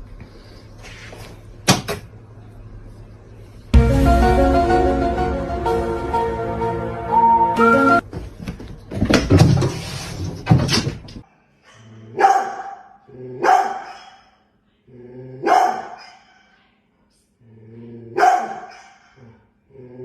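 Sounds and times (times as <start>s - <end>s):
dog barking: 12.1s - 14.4s, 15.4s - 16.4s, 18.2s - 19.2s.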